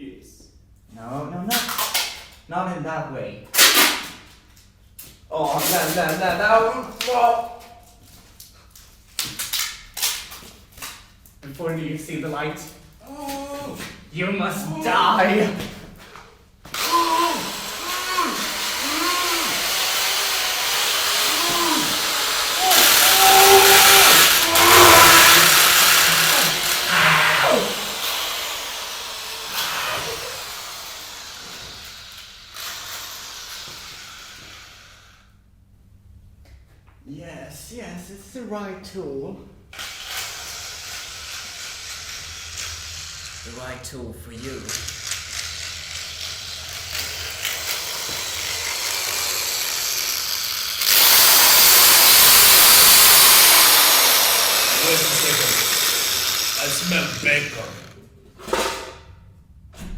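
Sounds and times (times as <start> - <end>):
power tool winding down: 16.7 - 35.3, 39.8 - 43.6, 44.6 - 58.0
hiss: 16.9 - 35.3, 39.8 - 43.4, 47.4 - 56.8.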